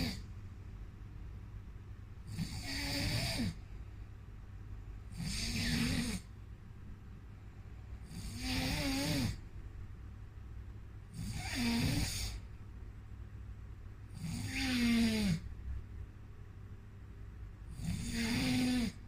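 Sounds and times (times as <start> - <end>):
person snoring: 0.0 - 0.2, 2.2 - 3.6, 5.1 - 6.3, 8.0 - 9.4, 11.1 - 12.5, 14.1 - 15.5, 17.7 - 19.0
quiet breathing: 11.1 - 12.7.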